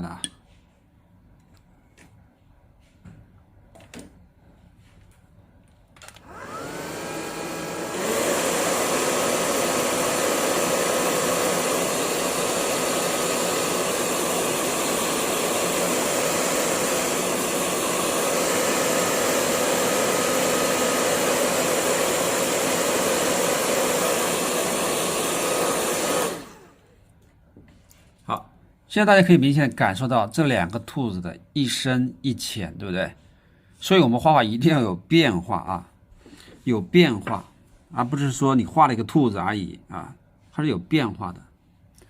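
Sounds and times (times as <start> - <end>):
hair dryer blowing: 6.1 - 26.9.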